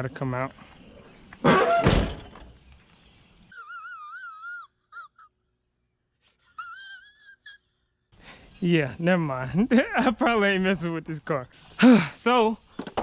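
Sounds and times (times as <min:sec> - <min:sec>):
bird chirps: 0:00.1 - 0:13.0
person sighing heavily: 0:11.8 - 0:12.2.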